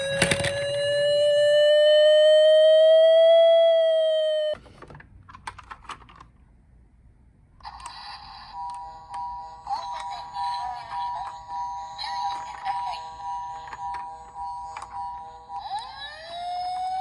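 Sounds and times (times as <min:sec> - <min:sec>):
toy siren wailing: 0:00.0 - 0:04.6, 0:15.5 - 0:17.0.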